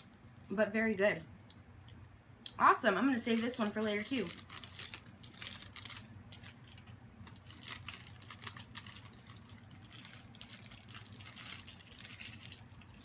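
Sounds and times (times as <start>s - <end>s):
low steady hum: 0.0s - 13.0s
plastic wrapper crinkling: 3.2s - 13.0s.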